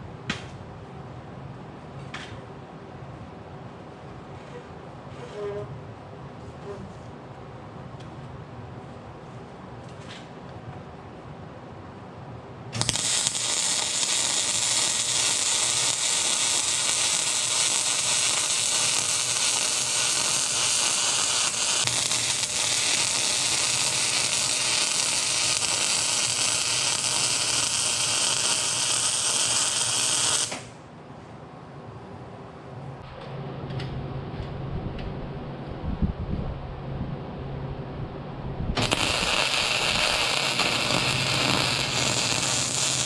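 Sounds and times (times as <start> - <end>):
welder arc crackling: 12.8 - 30.8, 38.8 - 43.0.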